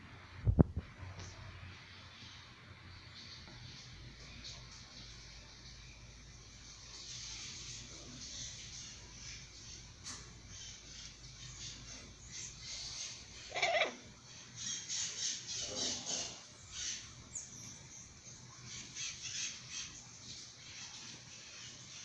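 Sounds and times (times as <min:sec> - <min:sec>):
parrot squawking: 0:12.8 - 0:14.0.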